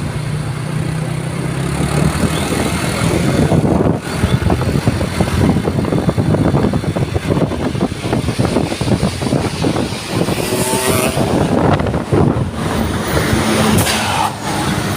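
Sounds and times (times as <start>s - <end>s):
bus engine rumbling: 0.0s - 14.9s.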